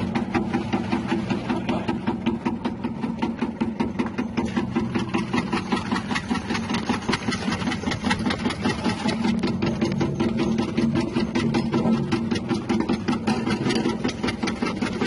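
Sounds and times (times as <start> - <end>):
motor hum: 0.0 - 15.0.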